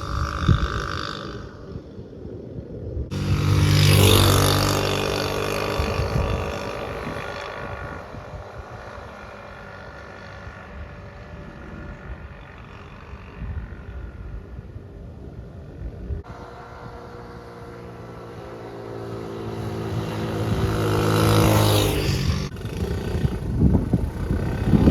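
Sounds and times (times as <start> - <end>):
wind noise: 0.0 - 24.9
vehicle engine passing: 3.1 - 13.3, 16.3 - 24.9.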